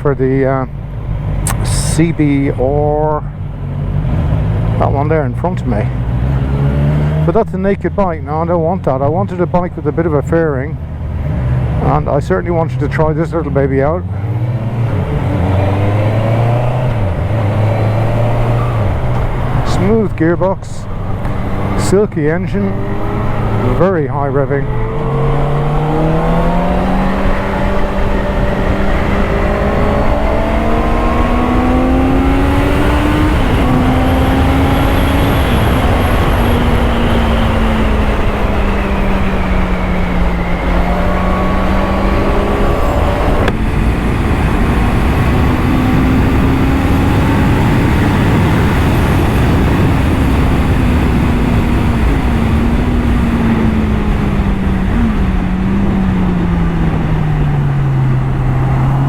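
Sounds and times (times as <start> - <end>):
motorcycle engine accelerating: 0.0 - 59.0
wind rush on microphone: 24.4 - 59.0.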